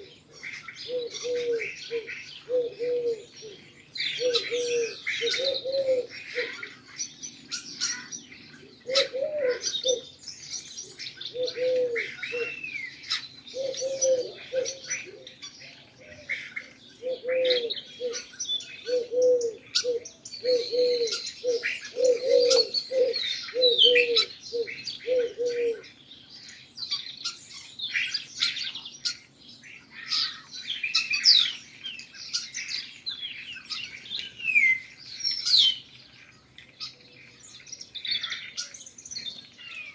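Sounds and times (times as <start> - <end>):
pigeons cooing: 0.0 - 10.2, 10.8 - 26.0
small birds chirping: 0.0 - 39.9.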